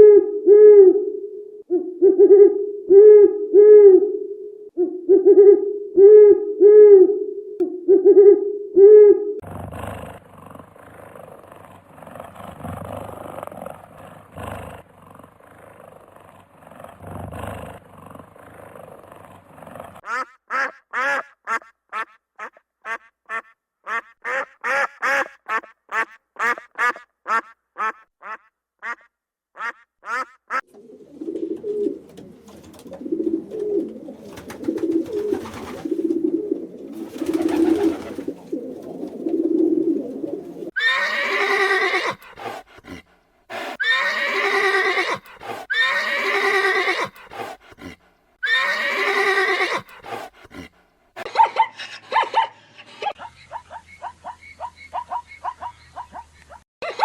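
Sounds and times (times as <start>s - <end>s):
animal calls: 9.7s - 30.6s, 40.7s - 57.0s.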